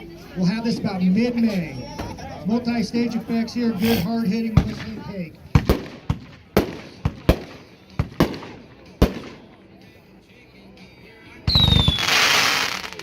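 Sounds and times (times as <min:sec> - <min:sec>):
firework shots: 0:05.6 - 0:09.5, 0:11.5 - 0:13.0
firework whistle: 0:11.5 - 0:13.0.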